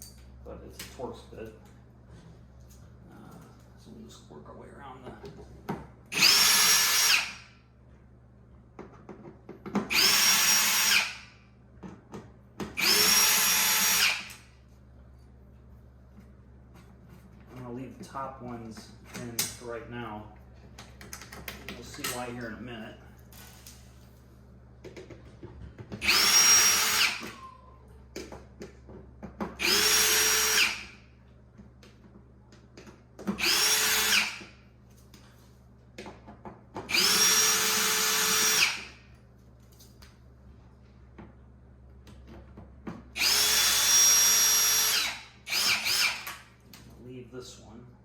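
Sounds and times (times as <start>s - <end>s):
power drill motor spinning: 6.1s - 7.5s, 9.9s - 11.3s, 12.8s - 14.5s, 26.0s - 27.4s, 29.6s - 31.0s, 33.4s - 34.6s, 36.9s - 39.1s, 43.2s - 46.5s.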